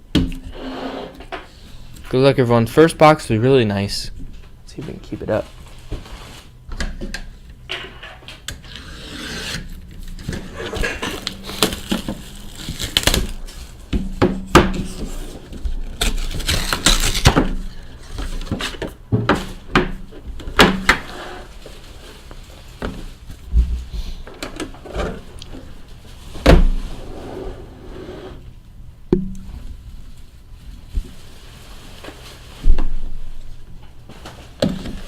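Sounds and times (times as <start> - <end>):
packaging rustling and scraping: 4.8 - 6.6, 7.8 - 13.9, 14.8 - 19.6, 20.8 - 24.2, 30.0 - 32.7.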